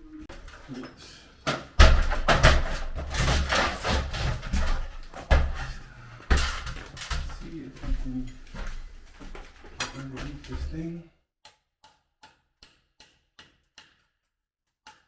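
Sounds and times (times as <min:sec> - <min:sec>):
heavy knocks and bangs: 0:01.7 - 0:08.2
rough clattering: 0:01.8 - 0:07.4.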